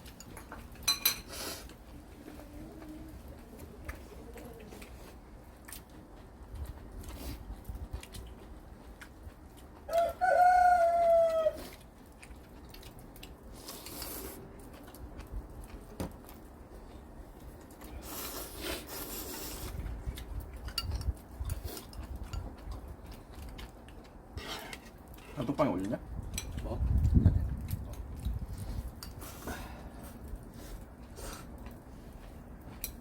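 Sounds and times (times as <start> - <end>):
dishes and cutlery clinking: 0.1 - 1.4
rooster crowing: 9.9 - 11.6.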